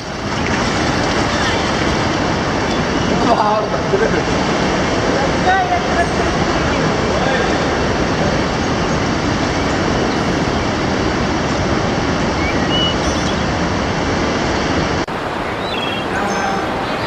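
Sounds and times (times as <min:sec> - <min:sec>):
rushing water roar: 0:00.0 - 0:17.0.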